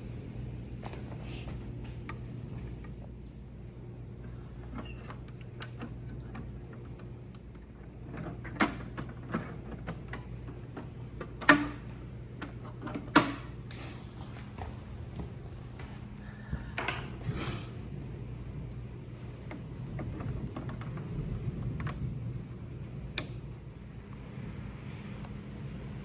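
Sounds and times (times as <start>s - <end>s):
steady low hum: 0.0s - 26.0s
computer parts clicking and knocking: 4.7s - 13.6s.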